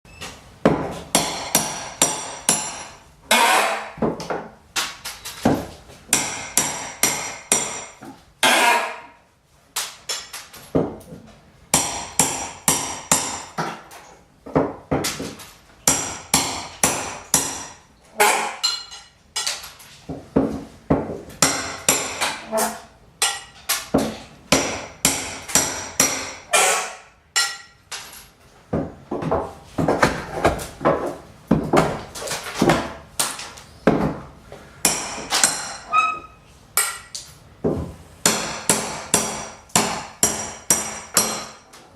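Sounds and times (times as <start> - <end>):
hammer striking nails: 0.6 - 8.8, 11.7 - 13.8, 14.9 - 19.6, 20.4 - 22.4, 23.2 - 28.1, 34.8 - 35.9, 38.2 - 41.7
nail screeching as pulled out: 3.3 - 4.0, 8.4 - 9.2, 18.1 - 18.7, 26.5 - 27.0, 35.7 - 36.4.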